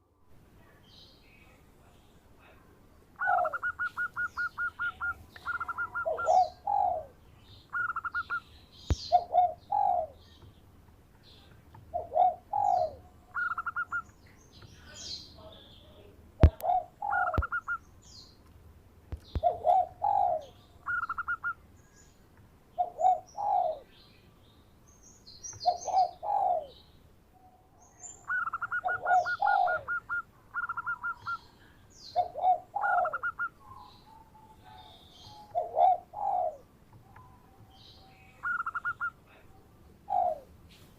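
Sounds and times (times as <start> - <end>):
small birds chirping: 0.0 - 40.9
dove cooing with trill: 3.2 - 10.2, 11.8 - 14.1, 16.4 - 17.8, 19.3 - 21.6, 22.8 - 23.9, 25.6 - 26.8, 28.2 - 31.5, 32.1 - 40.6.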